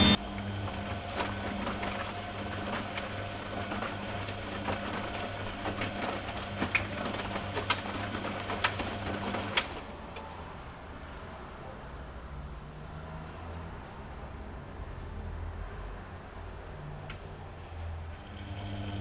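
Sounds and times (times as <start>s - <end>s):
washing machine motor humming: 0.0s - 10.3s, 17.9s - 19.0s.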